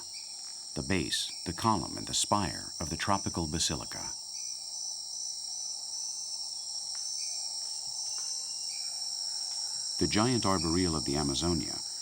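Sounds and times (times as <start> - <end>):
insects shrilling: 0.0 - 12.0.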